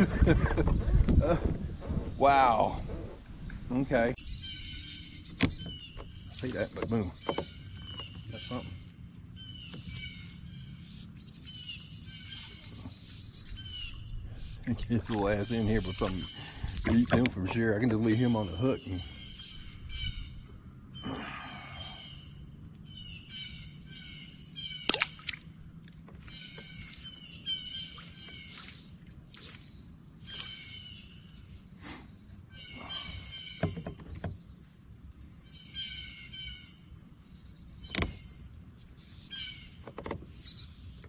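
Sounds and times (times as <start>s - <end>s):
birds chirping and singing: 0.2s - 41.0s
sharp knocks and clicks: 39.8s - 40.3s.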